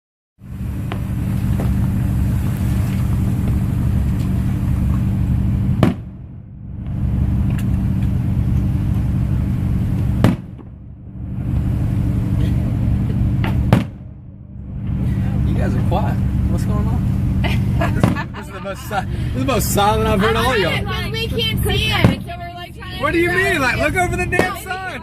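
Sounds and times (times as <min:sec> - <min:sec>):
car rumble inside cabin: 0:00.4 - 0:25.0
sharp crack: 0:05.7 - 0:09.1, 0:09.9 - 0:10.8, 0:13.4 - 0:14.2, 0:18.0 - 0:18.4, 0:24.3 - 0:24.7.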